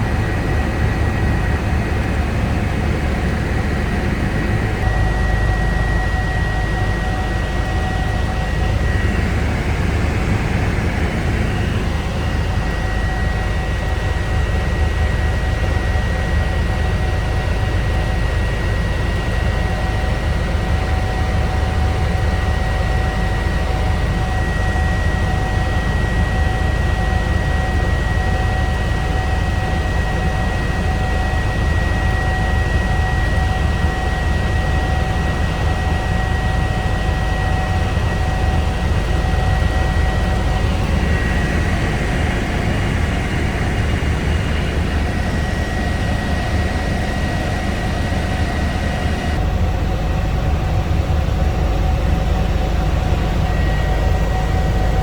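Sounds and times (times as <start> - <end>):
helicopter rotor and engine rumble: 0.0 - 55.0
high whines: 40.0 - 49.4.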